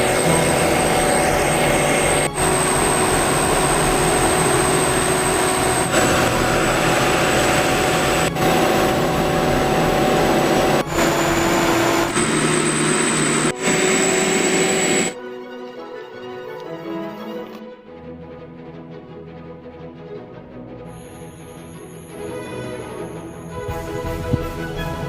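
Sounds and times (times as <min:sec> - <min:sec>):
soft music: 0:00.0 - 0:10.8, 0:14.5 - 0:25.0
combine harvester running: 0:00.0 - 0:15.2
thin high whine: 0:00.0 - 0:15.2, 0:20.9 - 0:23.8.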